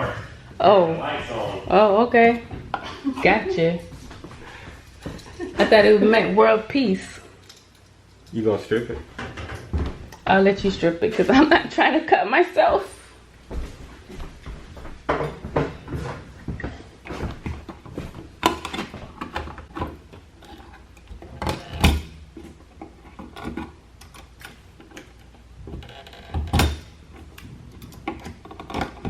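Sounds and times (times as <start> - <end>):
hand tools and wire clicking: 7.3 - 10.2, 17.4 - 29.0.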